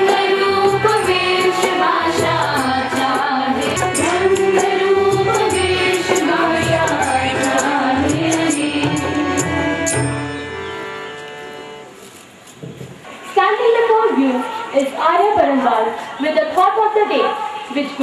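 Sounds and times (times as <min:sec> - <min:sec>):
voices singing a melody: 0:00.0 - 0:11.8.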